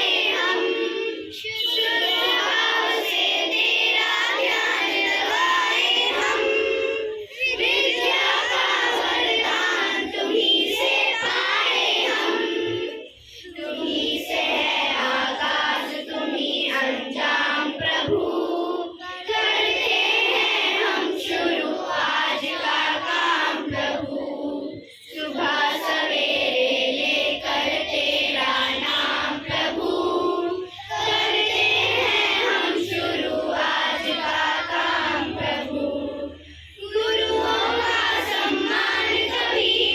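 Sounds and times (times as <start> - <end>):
children singing in chorus: 0.0 - 39.9.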